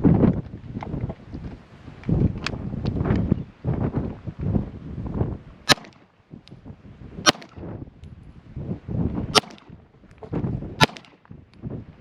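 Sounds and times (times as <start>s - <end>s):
wind buffeting microphone: 0.0s - 12.0s
pistol shots: 5.7s - 6.0s, 7.3s - 7.6s, 9.4s - 9.7s, 10.8s - 11.2s.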